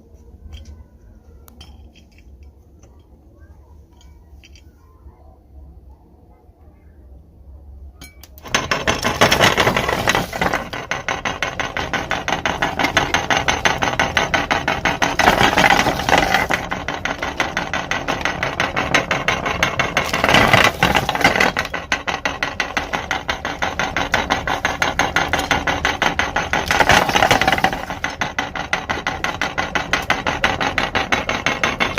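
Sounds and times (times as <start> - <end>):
meat grinder crushing plastic: 8.4 - 31.9.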